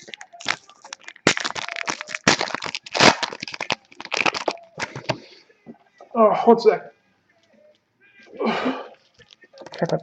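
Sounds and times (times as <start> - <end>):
foil wrapper crinkling and tearing: 0.0 - 5.2.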